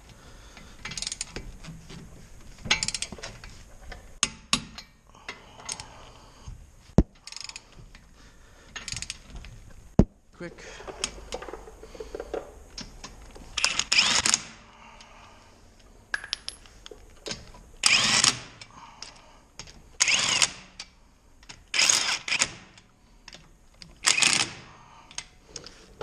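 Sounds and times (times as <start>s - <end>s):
impact wrench spinning lug nuts: 17.8s - 18.5s.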